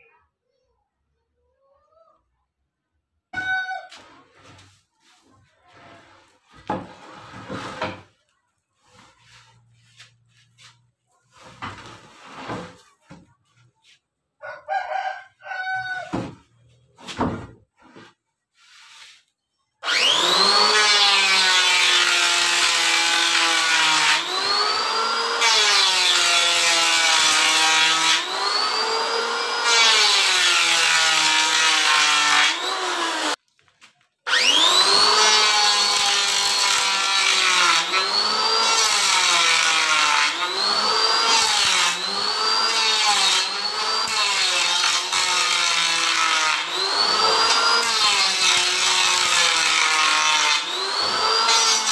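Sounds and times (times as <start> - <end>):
electric wood planer: 19.8 - 33.4, 34.3 - 51.9.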